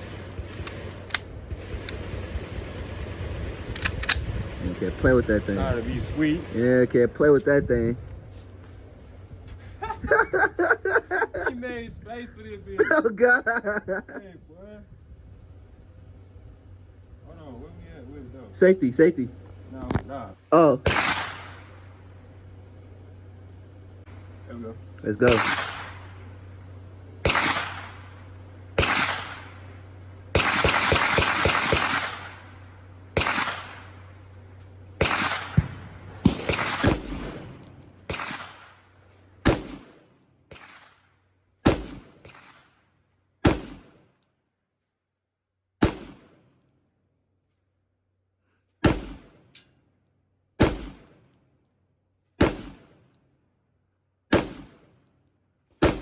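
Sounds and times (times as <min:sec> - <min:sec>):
gunshots: 0:20.8 - 0:21.9, 0:25.2 - 0:26.3, 0:27.2 - 0:34.2, 0:35.0 - 0:41.0, 0:41.6 - 0:42.8, 0:43.4 - 0:44.1, 0:45.8 - 0:46.6, 0:48.8 - 0:49.6, 0:50.6 - 0:51.3, 0:52.4 - 0:53.1, 0:54.3 - 0:55.0, 0:55.8 - 0:56.0.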